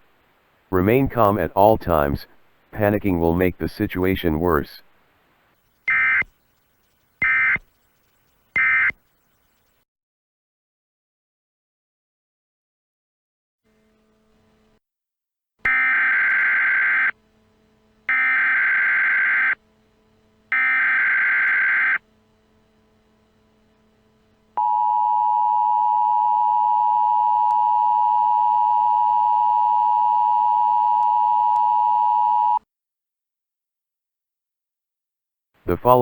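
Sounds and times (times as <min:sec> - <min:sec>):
harsh digital chirping bursts: 0:05.6 - 0:09.8.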